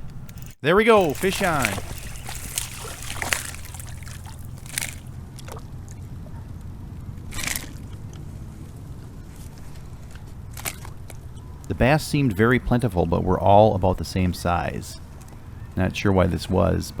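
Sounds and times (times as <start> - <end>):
water sloshing and trickling: 0.3 - 6.0
short splashes: 0.9 - 5.1.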